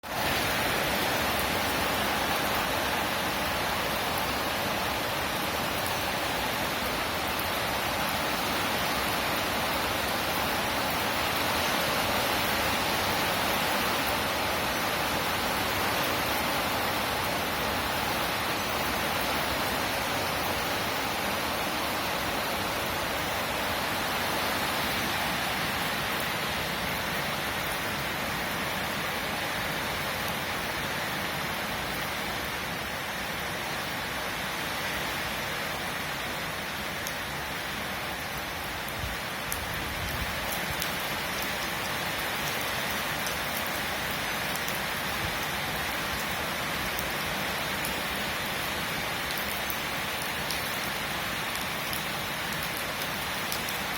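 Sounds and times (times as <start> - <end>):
steady rain falling: 0.0 - 53.9.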